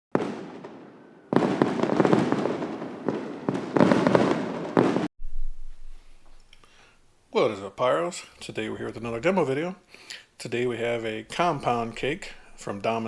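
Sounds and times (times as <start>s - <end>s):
fireworks launching and bursting: 0.1s - 6.3s.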